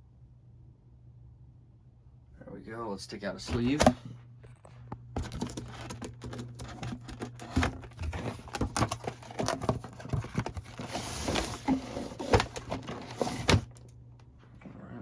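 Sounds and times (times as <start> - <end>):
cardboard packaging rustling: 3.4 - 4.0, 5.2 - 13.9.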